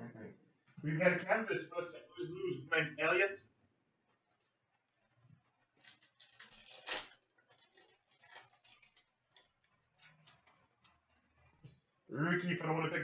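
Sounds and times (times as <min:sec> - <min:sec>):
foil wrapper crinkling: 0:05.8 - 0:11.1.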